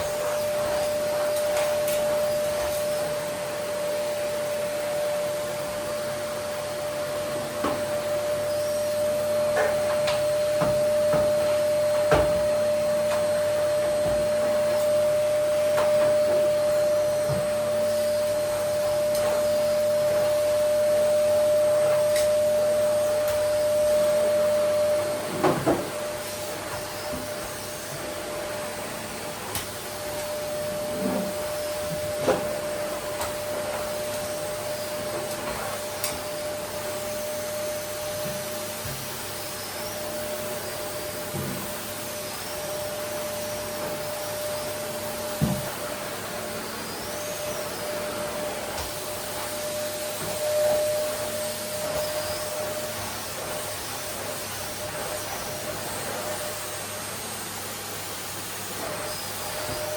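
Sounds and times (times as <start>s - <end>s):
vacuum cleaner whining: 0.0s - 59.9s.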